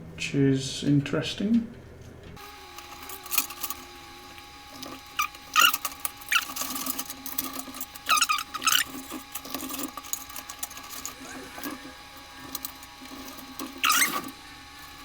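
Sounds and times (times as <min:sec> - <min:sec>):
squeaky plastic scrapes: 0:04.7 - 0:15.0.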